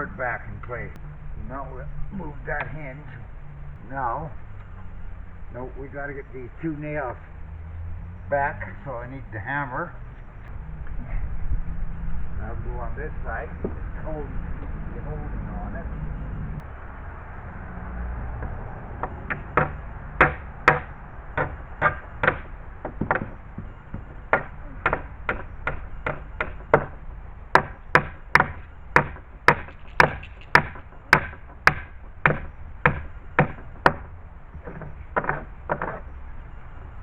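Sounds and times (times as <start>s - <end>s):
hammer driving nails into wood: 19.3s - 27.0s, 27.6s - 34.1s.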